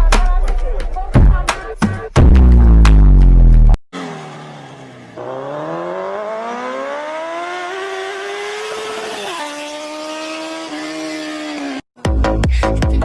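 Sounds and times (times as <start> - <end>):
vehicle engine accelerating: 2.3 - 11.8.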